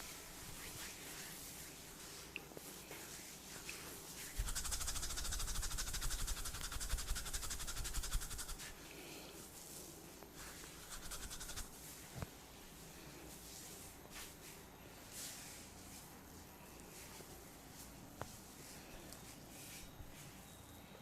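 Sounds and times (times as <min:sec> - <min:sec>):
hands rubbing through hair: 0:00.0 - 0:08.8, 0:09.4 - 0:12.2.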